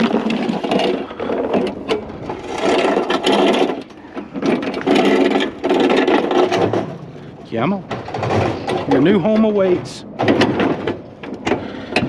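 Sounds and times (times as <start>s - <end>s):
lawn mower scraping along ground: 0.0s - 7.4s.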